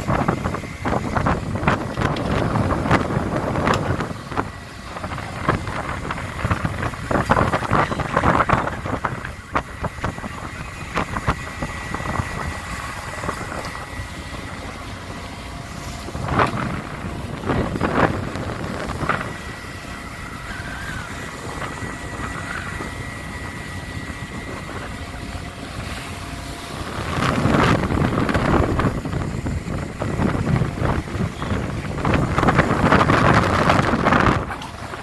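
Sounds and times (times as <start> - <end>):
boat engine rumble: 0.0 - 35.0
thin high whine: 0.0 - 35.0
wind on microphone: 0.0 - 35.0.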